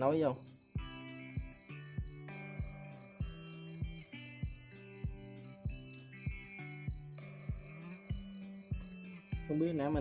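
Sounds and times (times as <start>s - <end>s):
low thumping beat: 0.8s - 10.0s.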